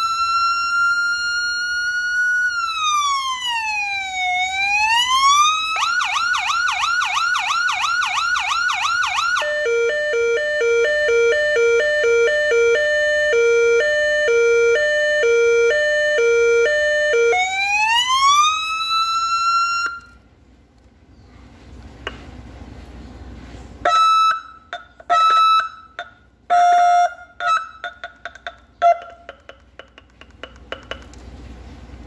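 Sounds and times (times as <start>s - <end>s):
electronic siren wailing and yelping: 0.0s - 20.2s, 23.8s - 25.8s.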